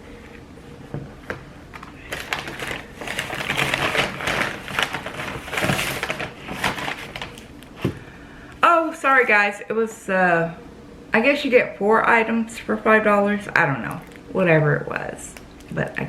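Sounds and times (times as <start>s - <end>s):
paper packaging crinkling: 1.2s - 7.9s.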